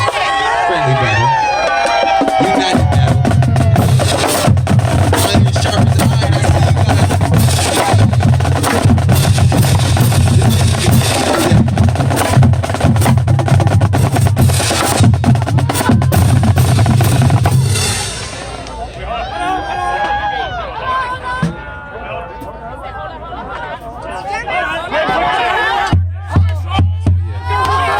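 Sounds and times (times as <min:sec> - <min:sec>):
snare drum strokes and rolls: 0:01.7 - 0:18.8
bass drum: 0:01.9 - 0:18.5.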